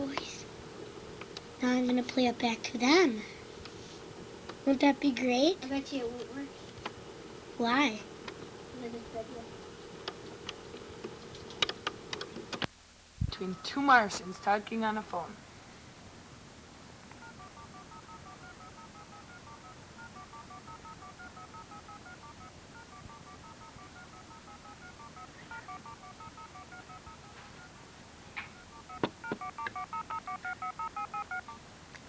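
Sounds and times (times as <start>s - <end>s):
telephone clicks: 1.1s - 1.5s, 8.1s - 8.6s, 9.5s - 12.7s, 28.4s - 31.4s
touch-tone dialing beeps: 13.4s - 14.6s, 17.2s - 27.8s, 28.4s - 31.6s.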